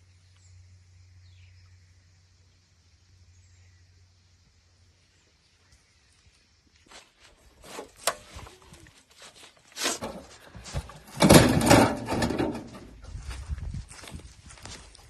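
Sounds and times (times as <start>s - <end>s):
objects knocking and clicking: 11.0s - 12.9s.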